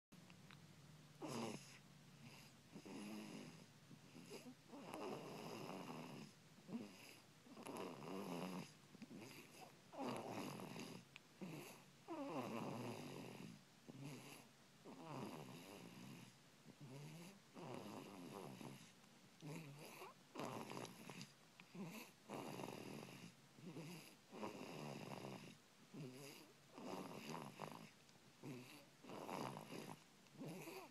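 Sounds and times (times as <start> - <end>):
person snoring: 1.2 - 30.9.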